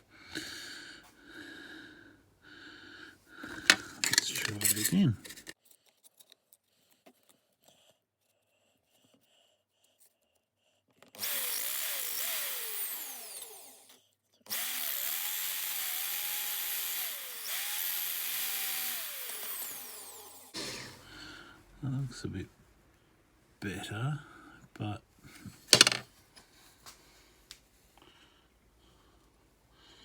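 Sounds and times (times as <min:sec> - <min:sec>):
drill bit sharpener motor grinding: 0:03.5 - 0:05.5, 0:11.2 - 0:13.9, 0:14.5 - 0:20.6.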